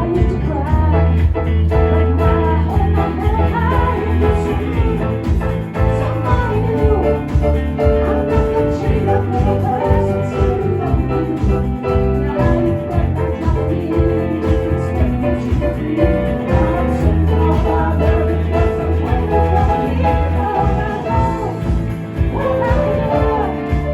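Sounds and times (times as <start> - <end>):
live band playing: 0.0 - 23.9.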